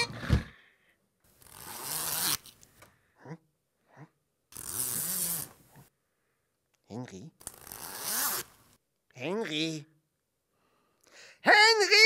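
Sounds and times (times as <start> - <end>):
zipper rasping: 1.4 - 2.5, 4.5 - 5.6, 7.5 - 8.5.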